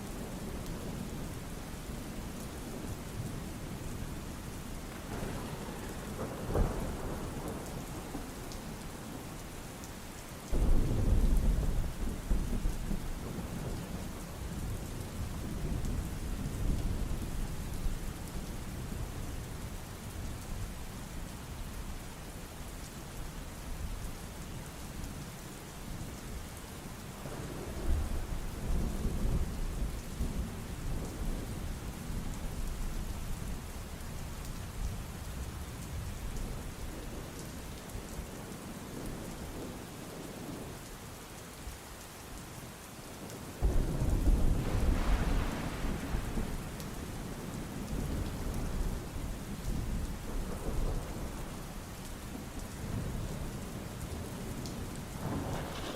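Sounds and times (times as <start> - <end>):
steady rain: 0.0 - 55.9
rolling thunder: 4.9 - 8.5, 10.5 - 17.6, 43.6 - 51.7, 52.8 - 55.9.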